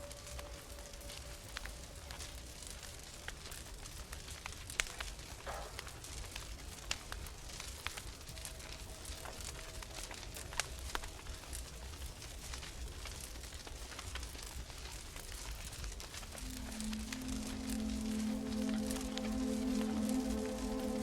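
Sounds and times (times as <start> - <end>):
wood fire crackling: 0.0 - 21.0
low steady rumble: 16.2 - 21.0.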